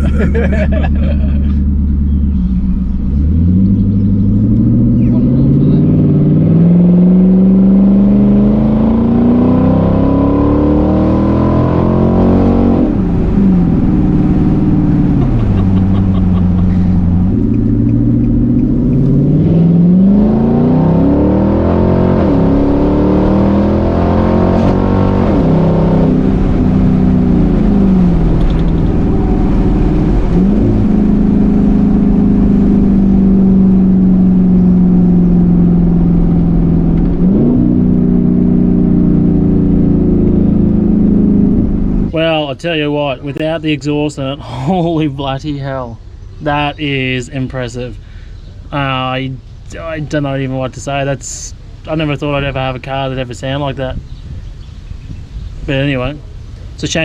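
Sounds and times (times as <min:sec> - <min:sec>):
loud engine revving: 0:00.0 - 0:44.0.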